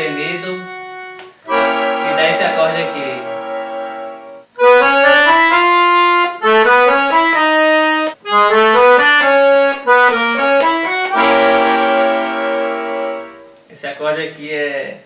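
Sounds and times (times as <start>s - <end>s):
accordion melody: 0.0s - 13.7s.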